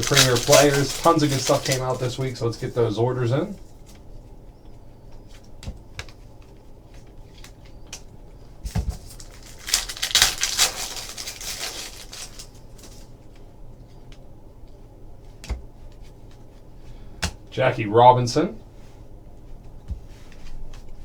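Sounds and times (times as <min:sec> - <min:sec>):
trading cards clicking and tapping: 0:00.0 - 0:03.0
wrapper crinkling and tearing: 0:00.0 - 0:03.0, 0:08.9 - 0:13.1.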